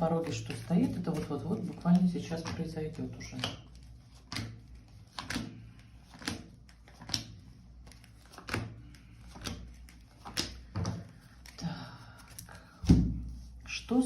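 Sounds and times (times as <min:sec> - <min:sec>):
cards tapping on table: 0:04.2 - 0:05.5.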